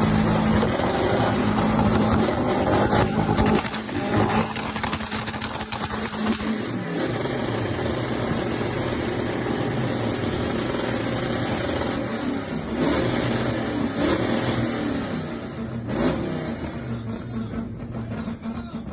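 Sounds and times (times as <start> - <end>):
exhaust bangs: 0.0 - 11.8
car engine on launch limiter: 0.0 - 18.9.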